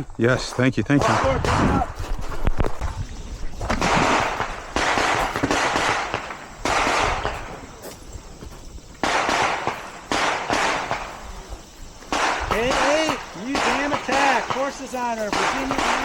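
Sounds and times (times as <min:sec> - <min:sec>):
pistol shots with echo: 0:01.0 - 0:01.9, 0:03.8 - 0:07.5, 0:09.0 - 0:11.2, 0:12.1 - 0:16.0.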